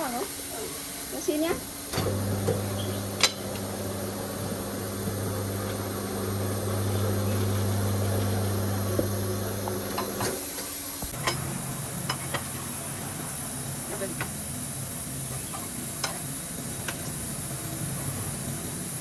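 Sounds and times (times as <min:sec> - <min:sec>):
electric motor humming: 0:02.0 - 0:10.4.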